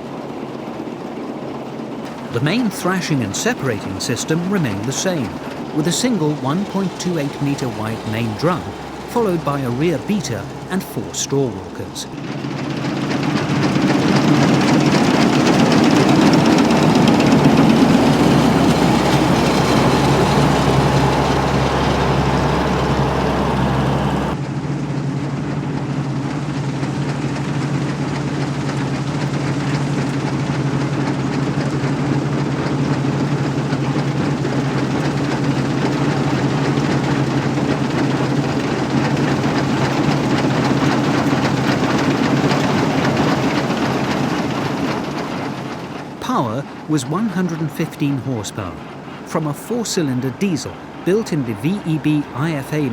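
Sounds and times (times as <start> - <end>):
diesel engine running under load: 2.1 - 52.9.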